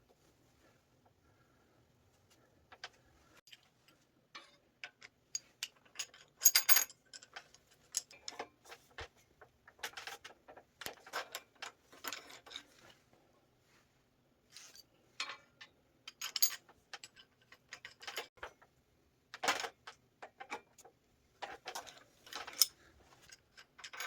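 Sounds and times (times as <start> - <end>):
metal tools clinking: 21.7 - 24.0.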